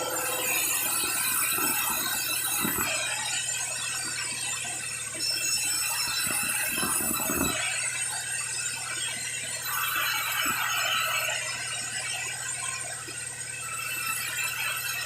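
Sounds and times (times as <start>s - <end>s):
machine hum: 0.0s - 8.0s
saw blade squealing whine: 0.0s - 15.0s.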